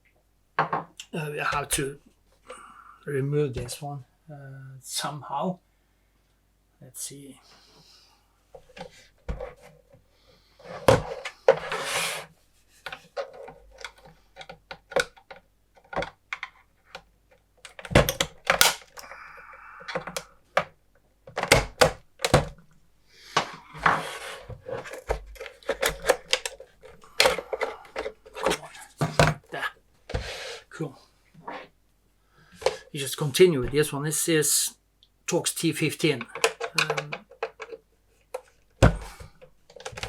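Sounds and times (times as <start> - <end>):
plastic scraping: 10.6 - 20.7, 23.3 - 30.7
plastic panel clicks and knocks: 12.9 - 19.0, 21.3 - 22.6.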